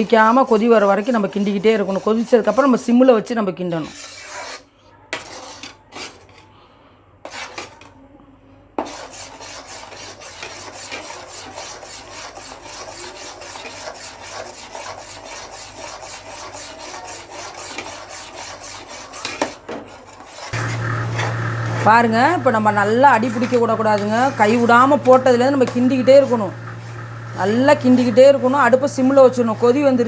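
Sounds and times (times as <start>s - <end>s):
ladle scraping pan bottom: 20.2s - 30.0s.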